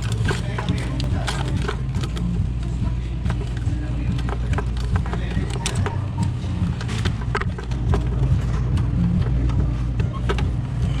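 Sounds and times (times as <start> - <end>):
clicks of parts handled: 0.0 - 2.3
low machine hum: 0.0 - 11.0.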